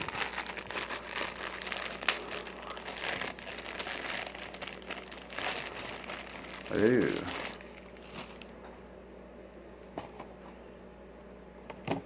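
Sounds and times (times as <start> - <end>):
packaging crinkling: 0.0 - 8.6.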